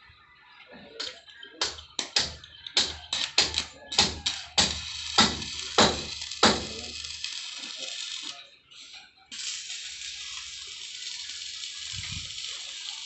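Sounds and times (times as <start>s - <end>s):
arc welding crackling hiss: 1.0s - 13.0s.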